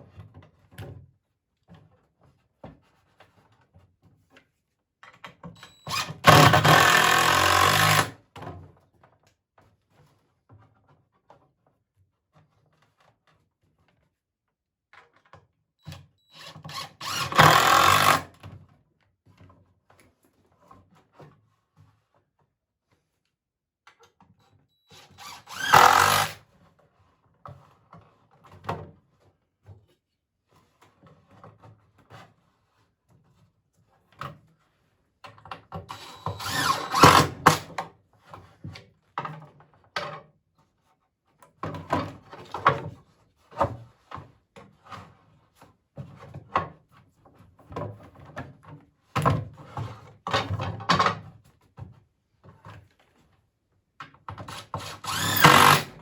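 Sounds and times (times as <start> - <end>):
power drill driving screws: 5.9 - 8.2, 16.4 - 18.3, 24.9 - 26.4, 35.9 - 37.8, 54.5 - 56.0.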